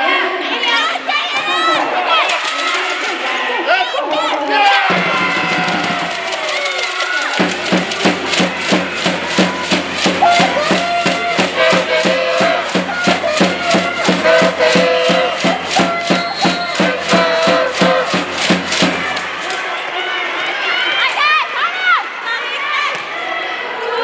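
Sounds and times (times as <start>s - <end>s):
voices chanting a tune: 4.6s - 19.8s
crowd clapping in fast beat: 4.9s - 19.9s.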